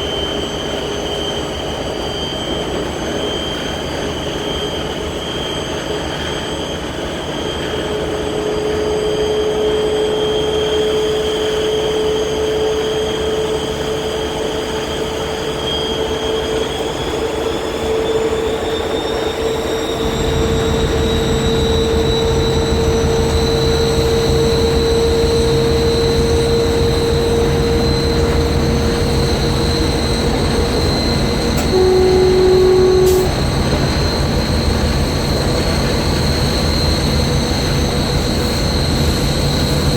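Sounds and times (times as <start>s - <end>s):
turbocharger whistling whine: 0.0s - 39.9s
diesel engine rumble: 20.0s - 39.9s
locomotive horn blast: 25.6s - 35.7s.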